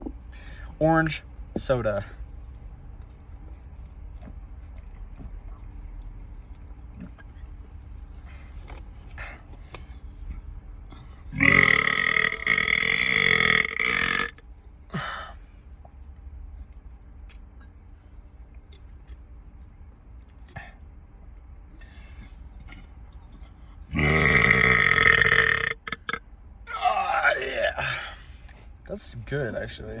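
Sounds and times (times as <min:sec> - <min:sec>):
person burping: 0:11.3 - 0:14.4, 0:23.9 - 0:28.2.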